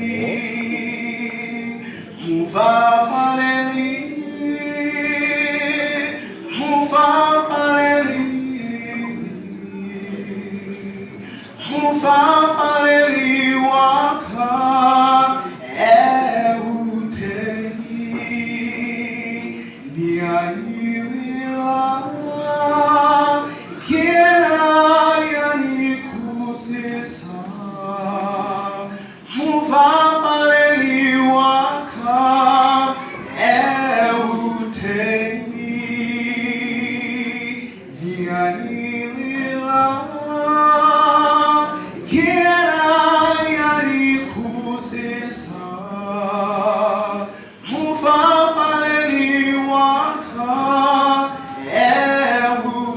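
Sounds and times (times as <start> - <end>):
group singing gospel: 0.0 - 52.9.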